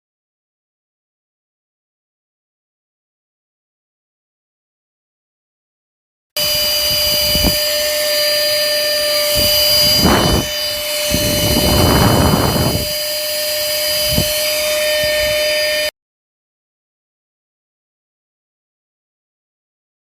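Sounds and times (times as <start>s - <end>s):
rushing air: 6.4s - 15.9s
vacuum cleaner motor whine: 6.4s - 15.9s.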